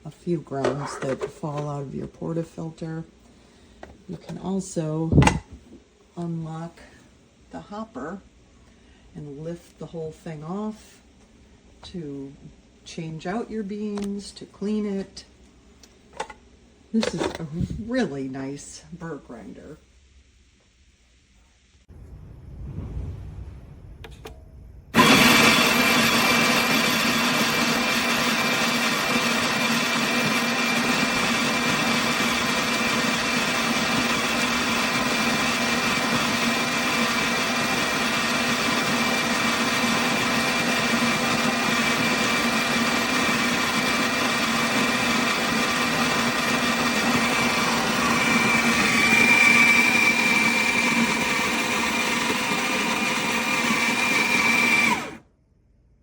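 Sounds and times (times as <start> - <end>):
coffee grinder motor whining: 25.0 - 55.2.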